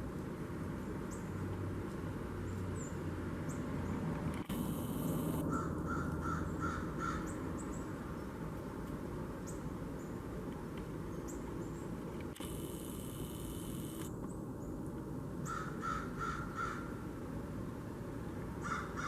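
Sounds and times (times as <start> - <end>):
blue jay harsh calls: 5.4 - 7.8, 15.4 - 17.0, 18.6 - 19.0.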